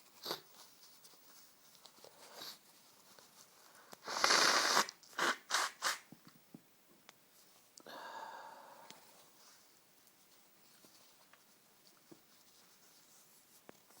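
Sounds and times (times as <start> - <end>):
person sniffing: 4.0 - 6.0
drawn-in breath: 7.8 - 9.2.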